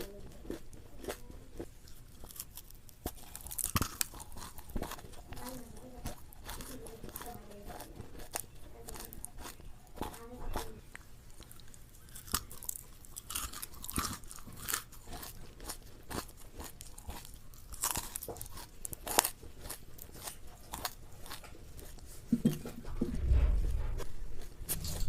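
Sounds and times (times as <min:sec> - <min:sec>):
crunchy food being chewed: 0:00.0 - 0:25.0
low rumble and thumps: 0:22.8 - 0:25.0.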